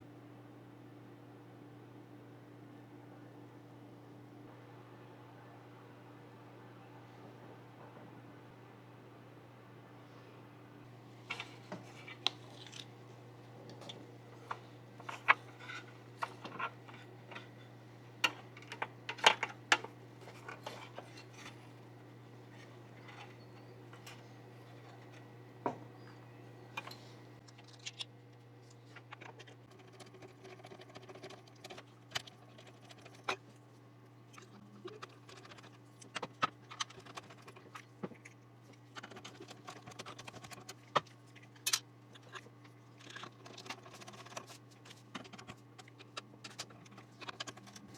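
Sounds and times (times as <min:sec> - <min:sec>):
steady low hum: 0:00.0 - 0:47.9
clicks and taps handling parts: 0:18.2 - 0:21.6.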